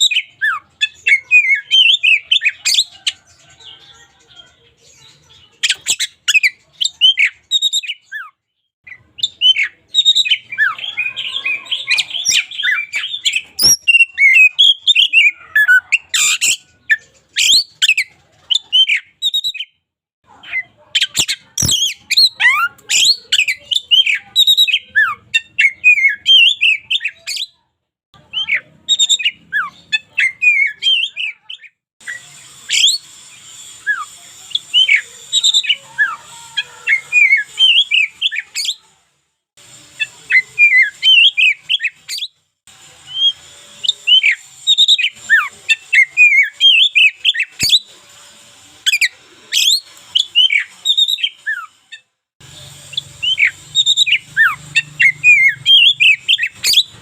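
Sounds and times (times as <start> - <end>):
songbird singing varied whistles: 8.9 - 16.6, 21.1 - 27.6.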